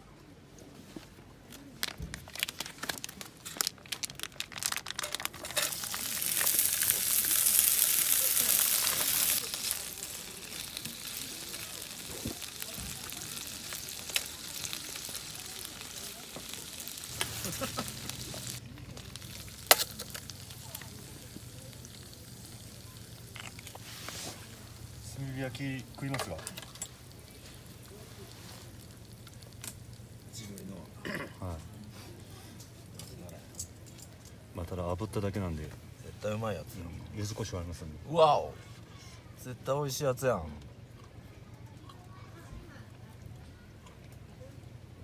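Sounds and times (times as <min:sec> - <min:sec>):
sharp crinkling crackling clicks: 0:01.5 - 0:30.7
sizzling hiss: 0:05.4 - 0:33.7.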